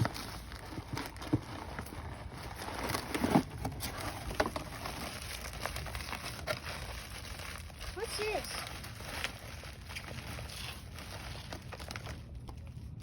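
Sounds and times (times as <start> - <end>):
packaging crinkling: 0.0 - 13.0.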